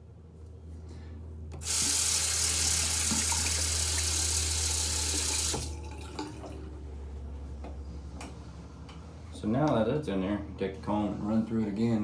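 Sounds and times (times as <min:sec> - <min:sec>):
tap running into sink: 0:01.6 - 0:06.5.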